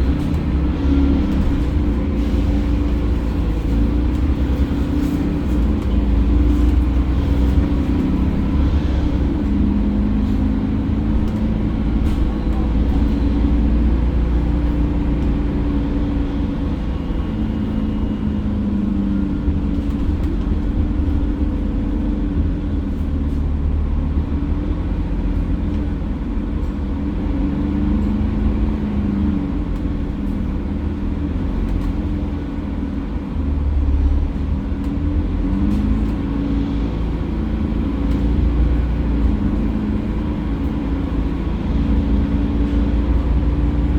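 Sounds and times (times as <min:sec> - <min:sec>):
bus diesel engine running: 0:00.0 - 0:43.9
low road rumble: 0:00.0 - 0:43.9.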